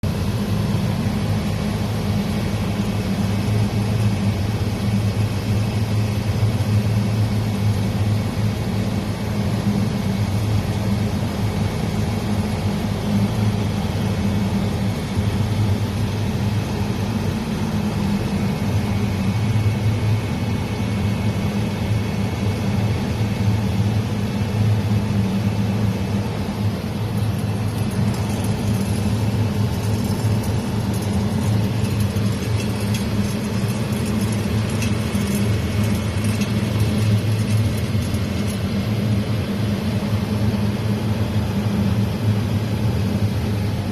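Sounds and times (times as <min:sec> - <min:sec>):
car engine low drone: 0:00.0 - 0:43.9
rattle in car: 0:27.1 - 0:39.1.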